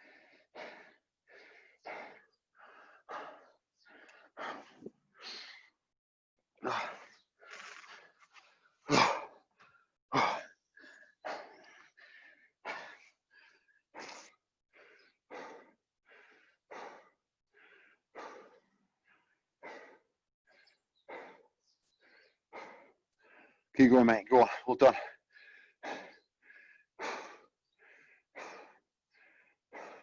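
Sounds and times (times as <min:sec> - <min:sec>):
person breathing hard: 0:00.0 - 0:05.8, 0:10.7 - 0:23.7, 0:24.5 - 0:30.0.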